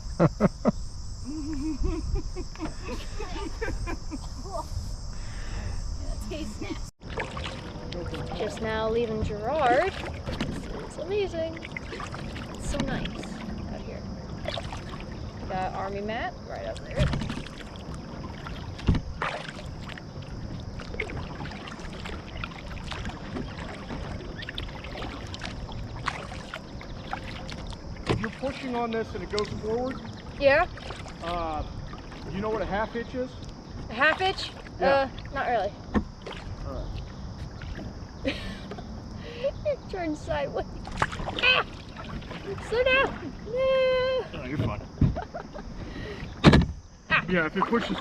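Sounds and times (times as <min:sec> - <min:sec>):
crickets chirping: 0:00.0 - 0:48.0
paddle strokes splashing in water: 0:07.0 - 0:16.0, 0:16.6 - 0:39.0, 0:40.7 - 0:44.5
water dripping off paddle: 0:16.8 - 0:32.5.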